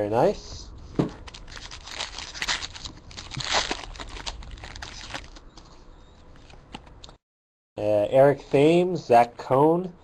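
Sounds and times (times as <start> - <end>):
plastic wrapper crinkling and tearing: 1.2 - 5.5.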